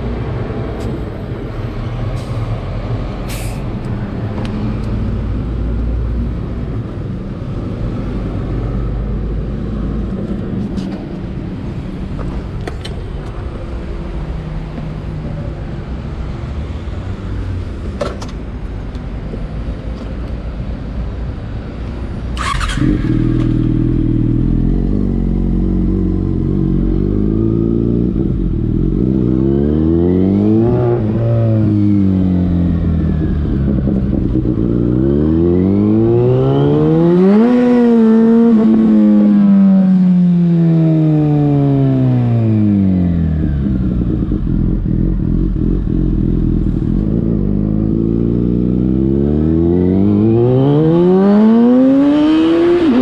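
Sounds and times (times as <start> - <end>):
motorcycle engine revving: 22.4 - 53.0.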